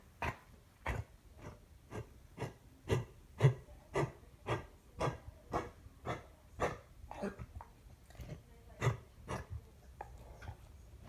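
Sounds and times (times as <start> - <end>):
dog coughing: 0.2 - 7.5.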